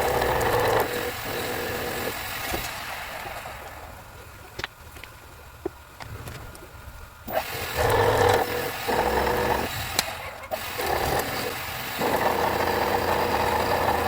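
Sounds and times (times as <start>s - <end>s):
power tool motor running: 0.0s - 4.0s, 7.3s - 14.0s.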